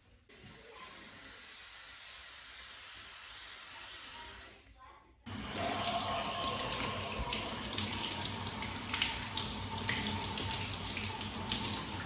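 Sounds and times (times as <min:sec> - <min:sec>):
tap running into sink: 0:05.3 - 0:12.0
water splashes: 0:05.3 - 0:12.0.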